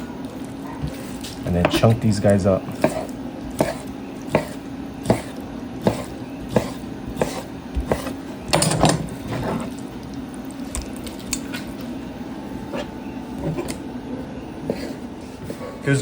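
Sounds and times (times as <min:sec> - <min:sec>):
knife chopping on cutting board: 0:02.7 - 0:08.2.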